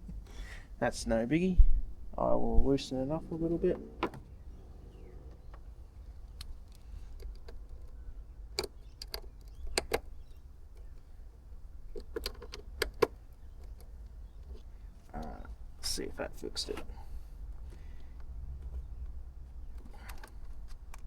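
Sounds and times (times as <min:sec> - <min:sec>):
steady low hum: 0:00.0 - 0:08.6
small clicks and taps: 0:08.6 - 0:11.1, 0:11.9 - 0:15.4.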